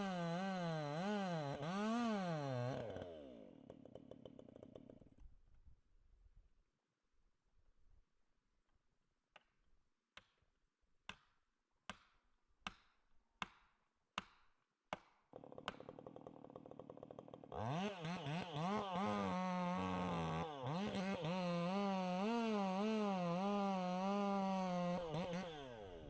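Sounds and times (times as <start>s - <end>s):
chainsaw engine revving: 0.0s - 5.0s, 15.4s - 26.0s.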